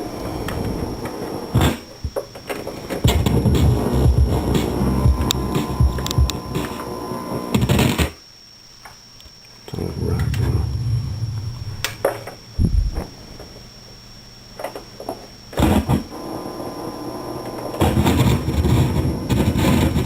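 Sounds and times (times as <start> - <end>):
electrical hum from speakers: 0.0 - 20.0
sharp crackles and pops: 0.4 - 10.6, 16.8 - 20.0.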